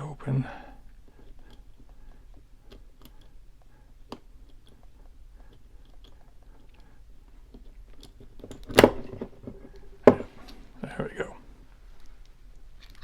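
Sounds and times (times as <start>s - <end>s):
padlock dial clicks: 1.2s - 9.2s.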